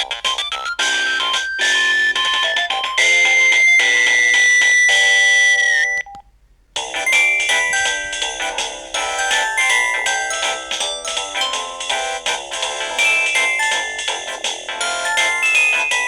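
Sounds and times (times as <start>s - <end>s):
synthesized phone ringtone melody: 0.0s - 6.2s, 6.9s - 16.0s.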